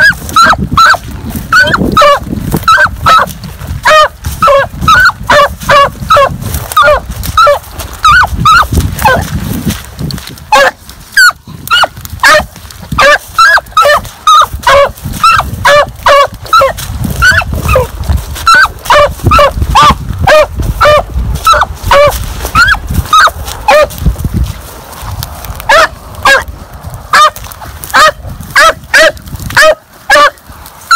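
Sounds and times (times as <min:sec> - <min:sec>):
dog barking: 0:11.7 - 0:16.7, 0:25.7 - 0:26.5, 0:27.9 - 0:30.4.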